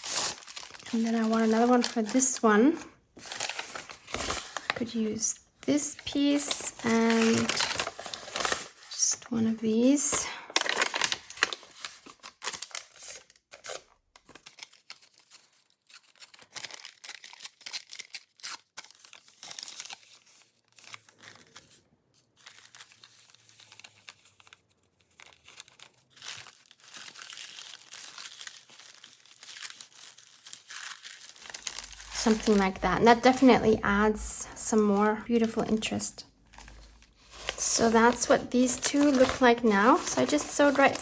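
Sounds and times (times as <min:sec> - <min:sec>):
papers rustling: 0:36.5 - 0:41.0.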